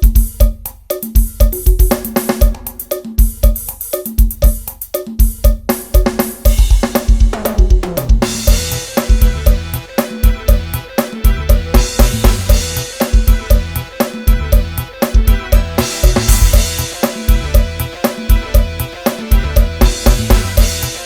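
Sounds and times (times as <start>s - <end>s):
drum kit beat: 0.0s - 21.0s
bass line: 6.5s - 21.0s.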